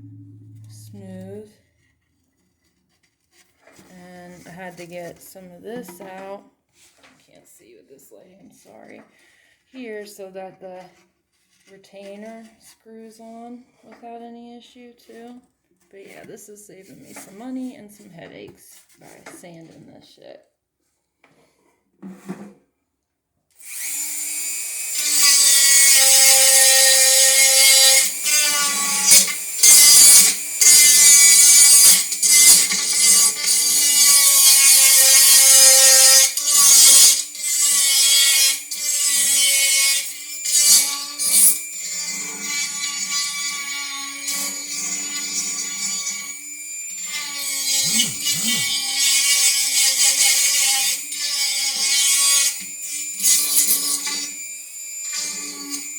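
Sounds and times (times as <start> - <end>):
rotary tool grinding plastic: 24.5 - 55.9.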